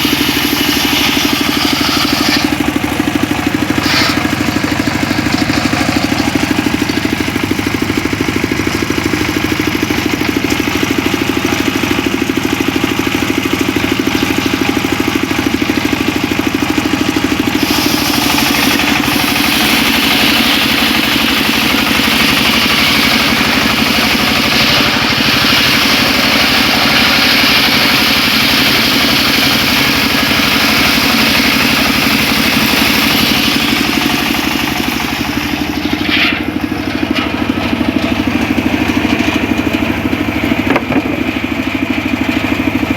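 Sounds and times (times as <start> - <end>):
saw blade cutting wood: 0.0 - 7.6, 17.2 - 37.8
circular saw motor running: 0.0 - 42.9.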